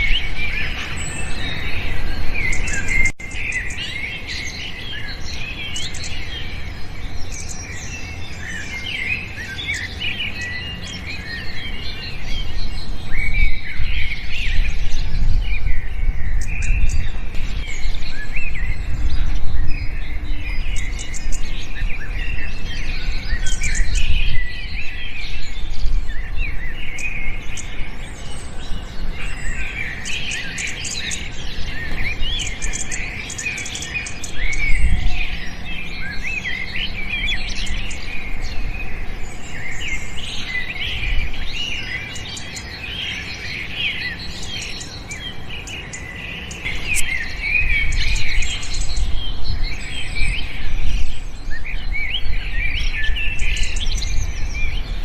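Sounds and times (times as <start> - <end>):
songbirds chirping: 0.0 - 55.0.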